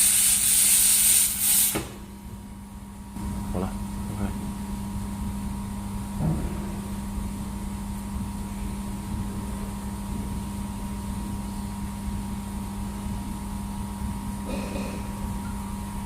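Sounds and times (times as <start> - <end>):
laser welding machine humming: 0.0 - 16.0
brief thump: 6.2 - 6.8.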